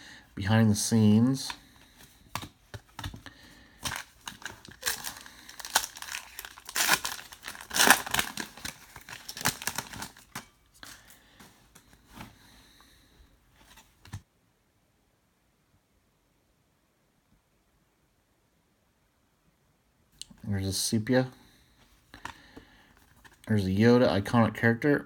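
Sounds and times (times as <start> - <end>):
foil wrapper tearing and crinkling: 3.8 - 11.1.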